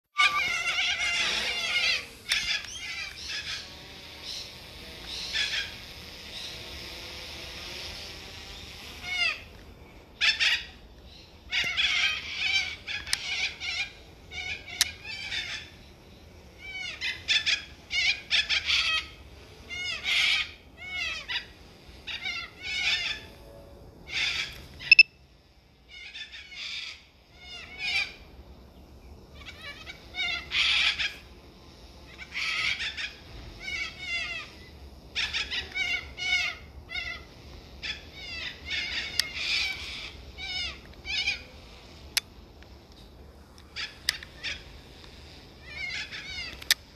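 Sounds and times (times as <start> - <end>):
cockatoo screeching: 0.1 - 6.6, 8.7 - 9.6, 10.2 - 10.8, 11.5 - 15.8, 16.6 - 23.4, 24.1 - 25.0, 25.9 - 28.3, 29.4 - 31.3, 32.1 - 42.0, 43.7 - 46.8
steady high hum: 0.2 - 46.9.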